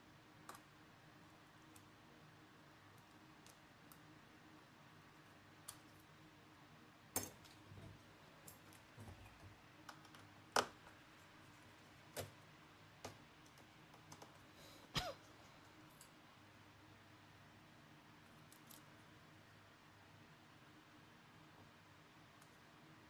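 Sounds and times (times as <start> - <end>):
small tools clicking and tapping: 13.0 - 14.4.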